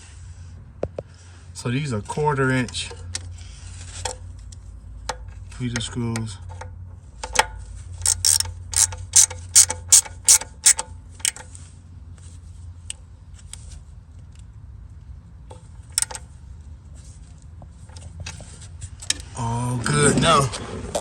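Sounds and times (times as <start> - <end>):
ratchet wrench clicking: 7.3 - 11.4, 15.9 - 16.2.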